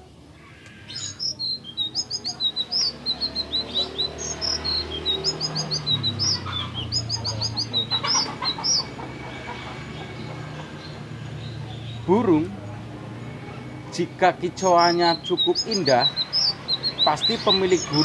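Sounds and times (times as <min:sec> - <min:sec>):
songbird singing: 0:00.0 - 0:18.0.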